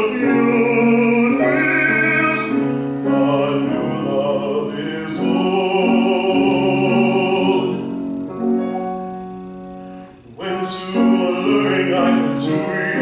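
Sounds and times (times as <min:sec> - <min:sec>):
instrumental accompaniment: 0:00.0 - 0:13.0
tenor singing with vibrato: 0:00.0 - 0:13.0.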